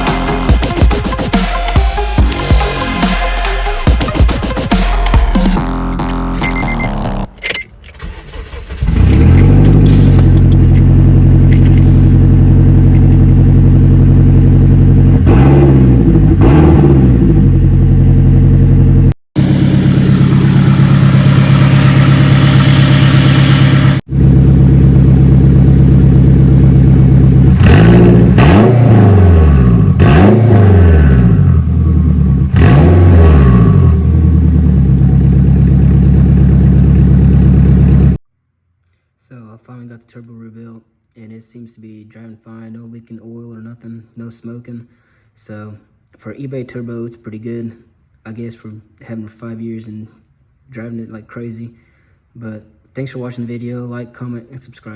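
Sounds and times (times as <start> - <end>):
engine throttle blips: 8.0 - 38.2
turbocharged car engine running: 8.8 - 38.2.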